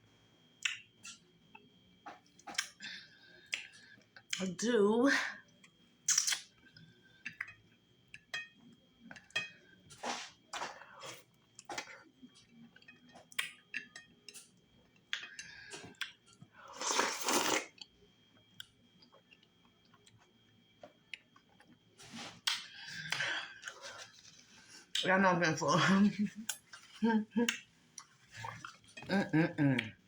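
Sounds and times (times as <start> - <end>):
person chewing and smacking: 0.6 - 2.8, 10.0 - 16.5, 18.5 - 24.3.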